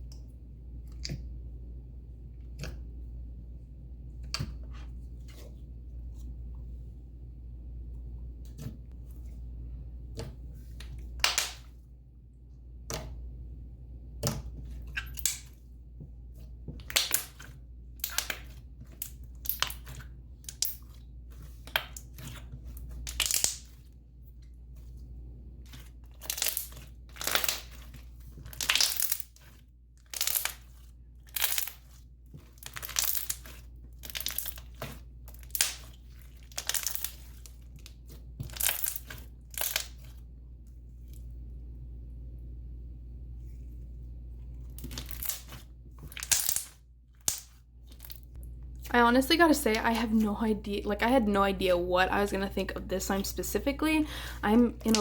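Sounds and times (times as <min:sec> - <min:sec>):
slime popping and crackling: 0:21.6 - 0:23.8, 0:26.1 - 0:37.6, 0:38.4 - 0:40.1, 0:44.8 - 0:48.3.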